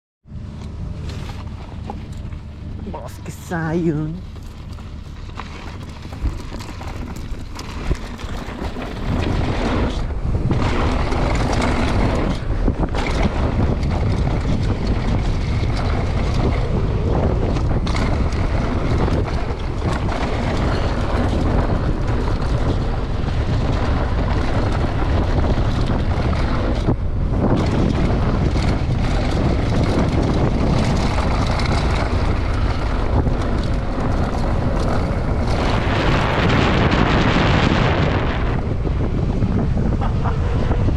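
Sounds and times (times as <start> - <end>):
wind buffeting microphone: 0.3 - 40.9
tyres rolling over dirt: 0.5 - 40.9.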